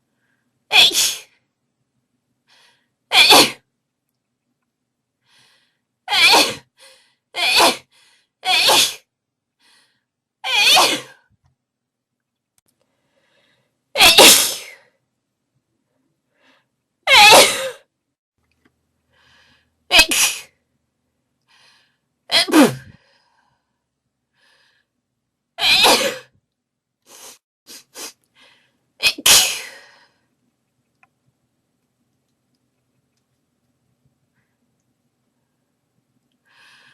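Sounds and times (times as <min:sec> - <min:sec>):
faint in-breaths: 0:00.0 - 0:00.6, 0:02.4 - 0:03.0, 0:05.2 - 0:05.9, 0:07.9 - 0:08.4, 0:09.6 - 0:10.1, 0:12.8 - 0:13.9, 0:16.3 - 0:16.8, 0:19.1 - 0:19.8, 0:21.5 - 0:22.1, 0:22.9 - 0:25.0, 0:28.2 - 0:28.9, 0:29.6 - 0:30.4, 0:36.4 - 0:36.9
person sneezing: 0:14.0 - 0:14.8, 0:17.1 - 0:17.8, 0:22.3 - 0:23.0, 0:25.6 - 0:26.3, 0:29.0 - 0:29.8.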